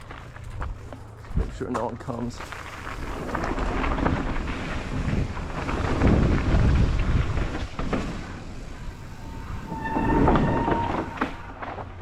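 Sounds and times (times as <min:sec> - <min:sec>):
mountain bike rumbling and rattling: 0:00.0 - 0:12.0
wind buffeting microphone: 0:03.0 - 0:11.6
short high squeal: 0:09.0 - 0:11.6.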